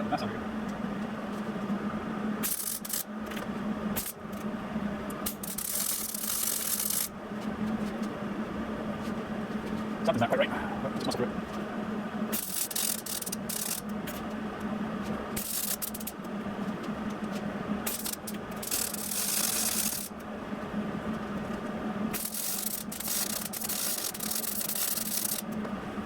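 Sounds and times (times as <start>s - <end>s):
steady low hum: 0.0s - 26.0s
welder crackling: 2.4s - 3.4s, 4.0s - 4.5s, 5.1s - 7.2s, 12.3s - 20.3s, 22.1s - 25.6s.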